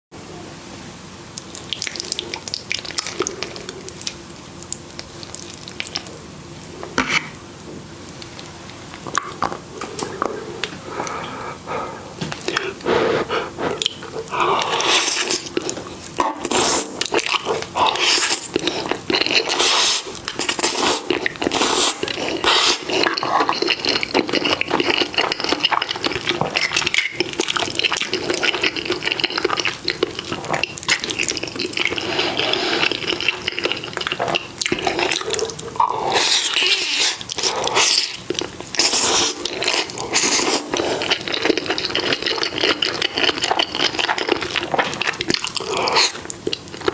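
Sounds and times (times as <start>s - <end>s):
wet chewing and slurping: 1.3s - 46.9s.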